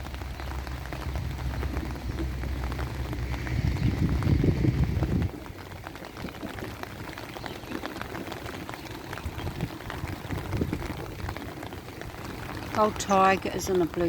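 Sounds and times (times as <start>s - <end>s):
low rumble: 0.0s - 7.1s
rain pattering: 0.0s - 14.0s.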